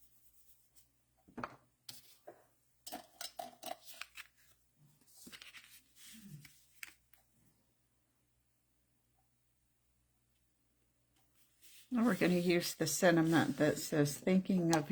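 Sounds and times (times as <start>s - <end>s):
paper card handling: 3.8s - 7.2s.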